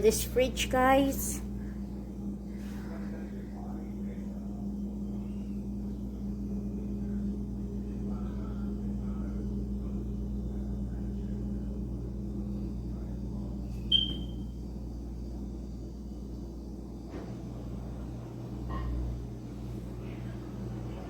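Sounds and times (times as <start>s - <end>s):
refrigerator humming: 0.0s - 21.0s
short high-pitched ping: 13.9s - 14.3s.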